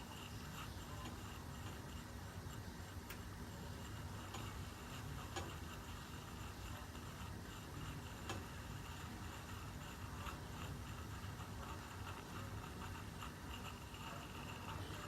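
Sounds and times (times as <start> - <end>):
steam boiler rumbling: 0.0 - 15.0.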